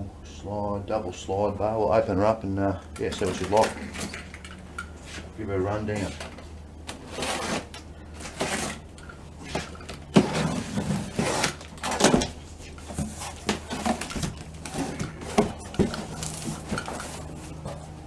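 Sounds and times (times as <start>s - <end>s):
cardboard packaging rustling: 5.9s - 18.0s.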